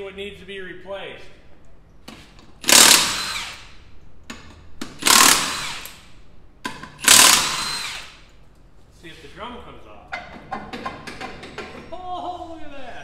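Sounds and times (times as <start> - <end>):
air impact wrench bursts: 2.6 - 3.8, 4.9 - 6.1, 7.0 - 8.3.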